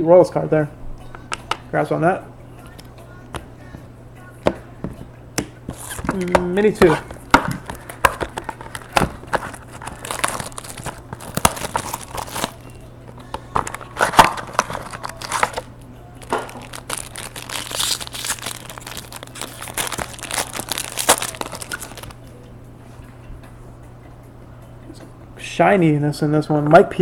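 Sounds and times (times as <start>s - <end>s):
wrapper crinkling and tearing: 7.6s - 12.7s, 13.5s - 22.2s.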